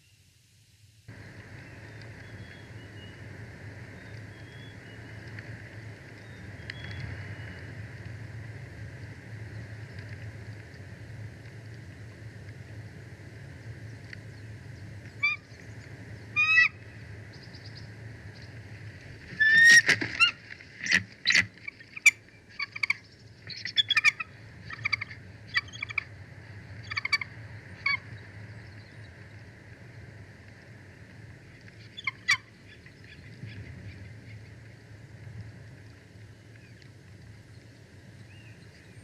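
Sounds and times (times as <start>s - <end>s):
eagle calling: 15.2s - 15.5s, 16.3s - 16.8s, 19.3s - 26.1s, 26.8s - 28.1s, 31.8s - 33.2s
piping chirps: 19.4s - 26.1s.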